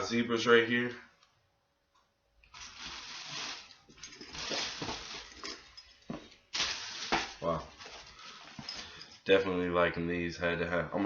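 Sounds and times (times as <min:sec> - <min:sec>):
rustling of sneakers and packing: 0:02.5 - 0:09.2.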